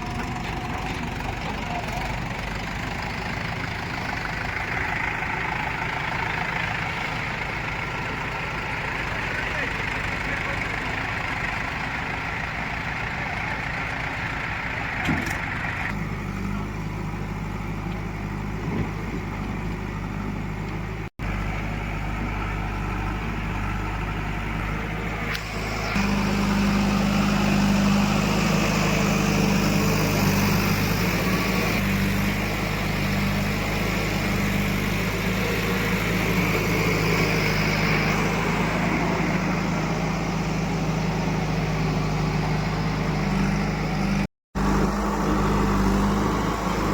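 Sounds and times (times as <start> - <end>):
heavy machinery diesel engine: 0.0 - 46.9.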